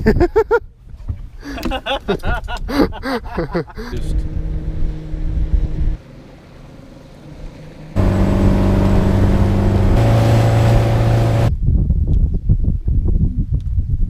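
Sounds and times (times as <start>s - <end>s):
boat motor drone: 4.0s - 11.5s.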